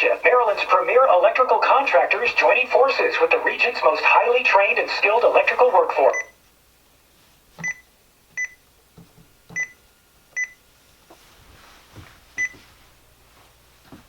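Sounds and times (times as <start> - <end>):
scanner keypad beeps: 6.1 - 6.4, 7.6 - 8.6, 9.6 - 9.8.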